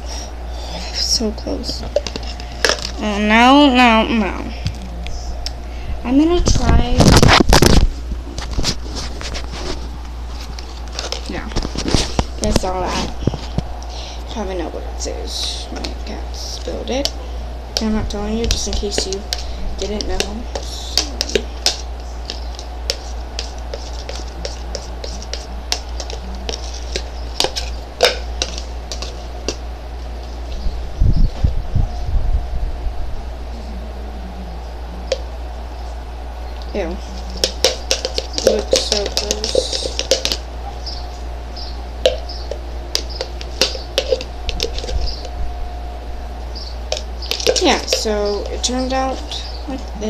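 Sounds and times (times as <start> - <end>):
hands kneading slime: 17.8 - 29.6, 37.2 - 40.4.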